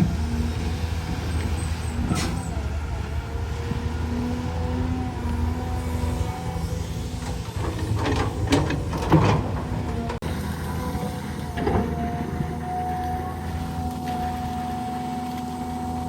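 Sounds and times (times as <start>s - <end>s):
heavy diesel engine running: 0.0s - 16.0s
creaks and scrapes: 6.4s - 10.2s.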